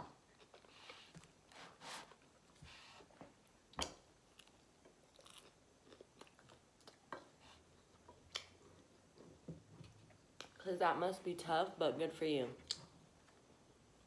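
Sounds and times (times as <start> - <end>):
chewing pasta: 0.0 - 1.4, 3.2 - 9.1.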